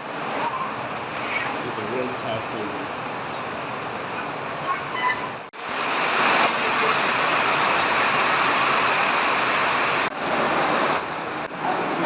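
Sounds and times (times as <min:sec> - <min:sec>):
heavy rain rushing: 0:05.5 - 0:12.0.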